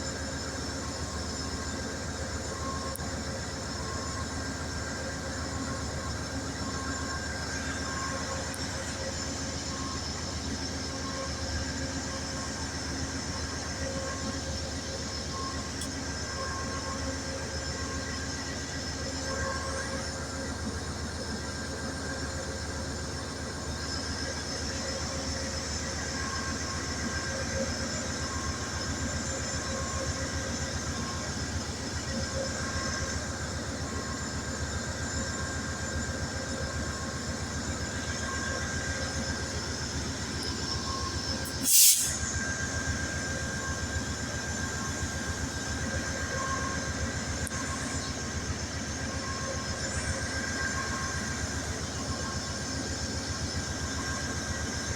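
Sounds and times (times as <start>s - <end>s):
train mechanical hum: 0.0s - 54.9s
short sharp hiss: 41.5s - 42.2s.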